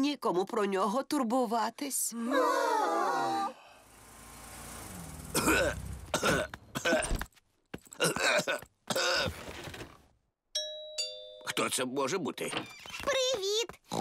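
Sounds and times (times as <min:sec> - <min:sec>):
cartoon bear coughing hoarsely: 0:05.3 - 0:07.2, 0:08.0 - 0:09.4.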